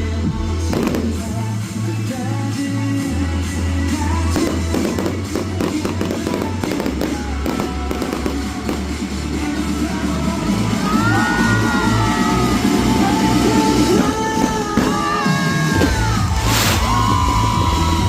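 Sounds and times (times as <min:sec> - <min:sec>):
music with steady bass line: 0:00.0 - 0:18.0
fireworks bangs and crackles: 0:00.4 - 0:02.6, 0:03.2 - 0:10.8, 0:12.7 - 0:18.0.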